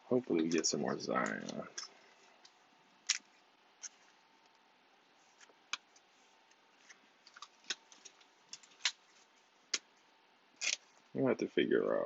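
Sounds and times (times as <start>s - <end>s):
cards flipping and shuffling: 0.4s - 4.6s.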